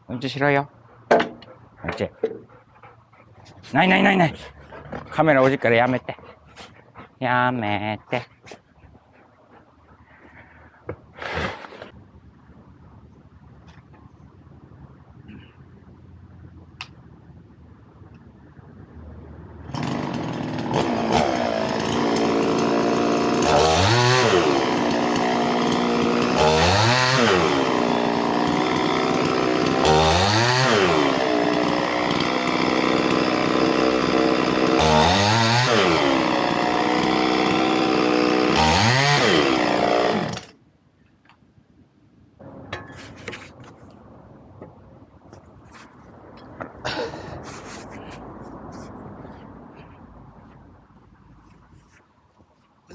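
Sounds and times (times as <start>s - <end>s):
chainsaw revving: 19.6s - 40.5s.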